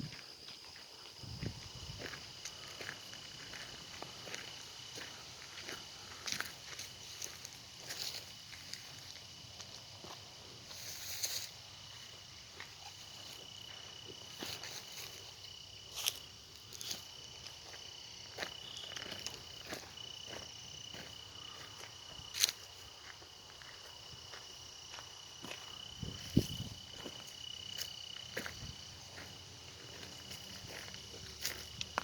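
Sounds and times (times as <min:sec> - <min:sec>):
footsteps crunching on trail: 0:00.0 - 0:32.0.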